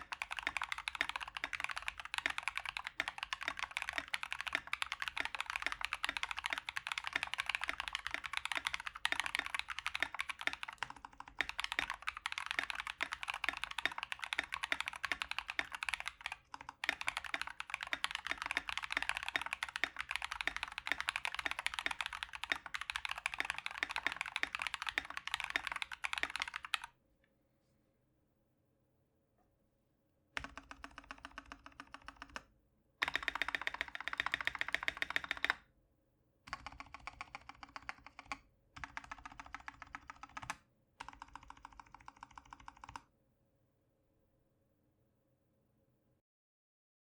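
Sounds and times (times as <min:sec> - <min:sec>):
fast typing on mechanical keyboard: 0:00.0 - 0:26.9, 0:30.4 - 0:32.4, 0:33.0 - 0:35.6, 0:36.5 - 0:43.0.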